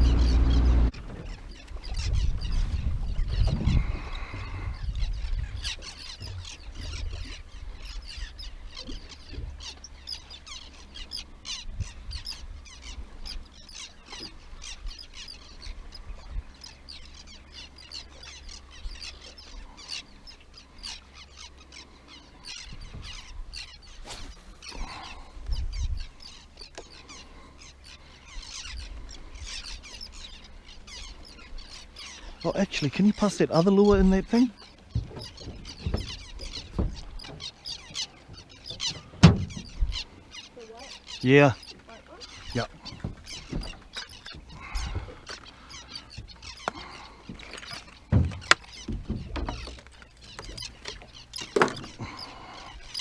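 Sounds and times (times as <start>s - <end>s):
low rumble on microphone: 0.0s - 1.3s
birds chirping: 0.0s - 53.0s.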